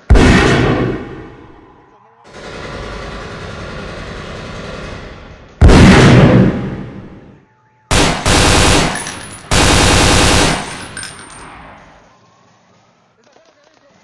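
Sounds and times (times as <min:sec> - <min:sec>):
gunfire echo: 0:00.0 - 0:01.5, 0:05.6 - 0:07.2, 0:07.9 - 0:11.4
automatic gunfire bursts: 0:07.9 - 0:11.0.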